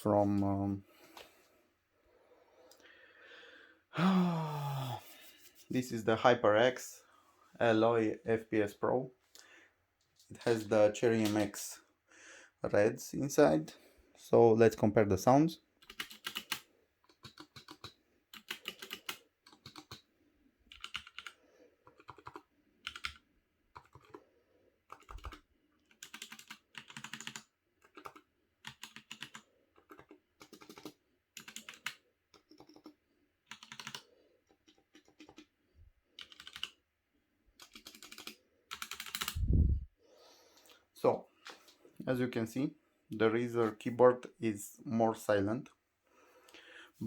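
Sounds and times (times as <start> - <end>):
keyboard keys typing: 15.8 - 20.1, 20.7 - 24.2, 24.9 - 35.6, 36.2 - 36.8, 37.5 - 39.4.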